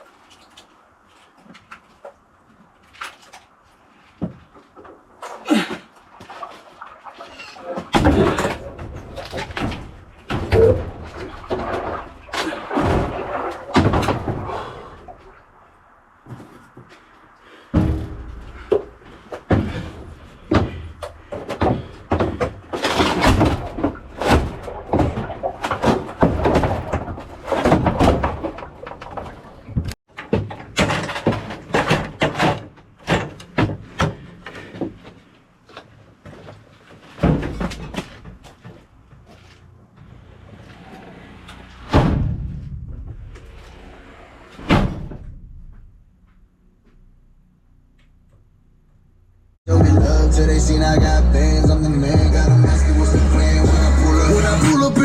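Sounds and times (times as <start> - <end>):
knocks and thuds: 7.9 - 12.0, 17.7 - 34.2, 41.9 - 43.4
music playing: 49.7 - 55.0.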